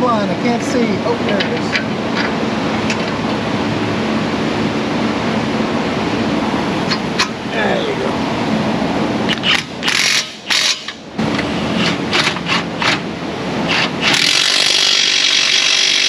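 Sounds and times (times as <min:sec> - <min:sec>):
power ratchet tightening fastener: 0:09.3 - 0:13.0, 0:13.7 - 0:16.0.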